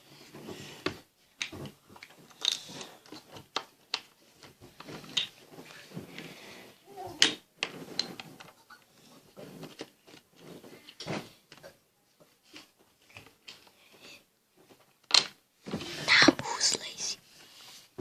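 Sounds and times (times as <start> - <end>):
small objects clicking and knocking: 0.8 - 6.2, 14.6 - 15.4.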